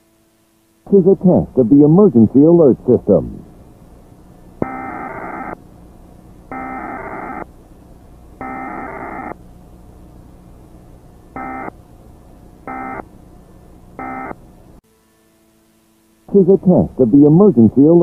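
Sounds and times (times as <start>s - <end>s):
steady low hum: 0.0s - 18.0s
alert data bursts: 4.6s - 5.6s, 6.5s - 7.5s, 8.4s - 9.4s, 11.3s - 11.8s, 12.6s - 13.1s, 14.0s - 14.4s.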